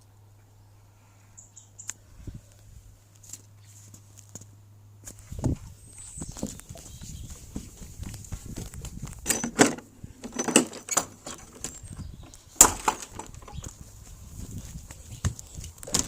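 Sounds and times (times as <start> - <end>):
scuffs: 3.1 - 9.2, 13.6 - 15.9.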